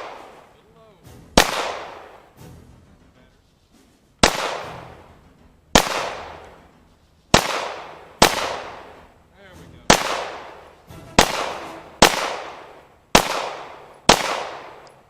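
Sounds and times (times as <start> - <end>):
pistol shots with echo: 0.0 - 0.7, 1.3 - 2.4, 4.2 - 6.7, 7.3 - 9.2, 9.8 - 15.0.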